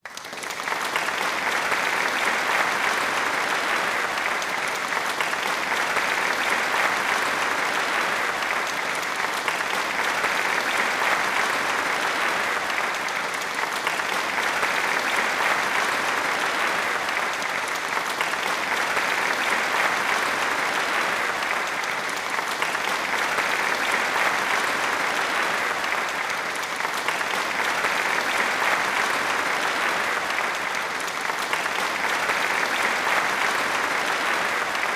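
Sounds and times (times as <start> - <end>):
crowd applause: 0.0 - 34.9.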